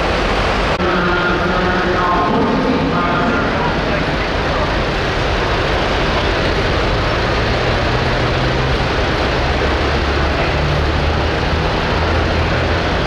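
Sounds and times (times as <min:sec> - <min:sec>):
tractor diesel engine running hard: 0:00.0 - 0:13.0.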